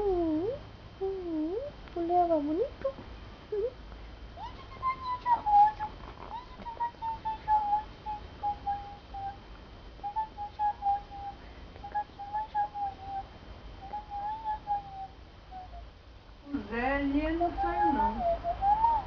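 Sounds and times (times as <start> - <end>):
person whistling a gentle tune: 10.0 - 15.8, 17.6 - 19.0.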